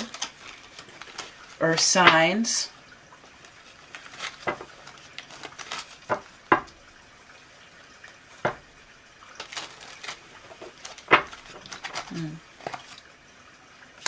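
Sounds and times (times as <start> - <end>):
cards snapping and tapping: 4.2 - 4.7.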